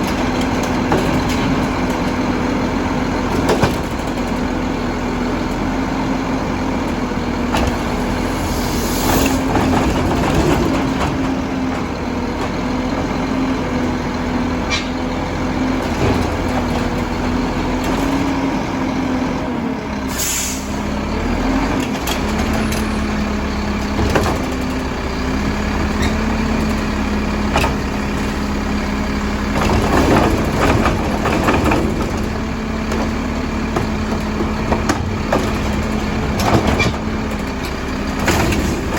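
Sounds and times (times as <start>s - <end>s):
garbage truck engine drone: 0.0s - 38.9s
metal clanks and knocks: 14.6s - 15.2s, 29.5s - 38.9s.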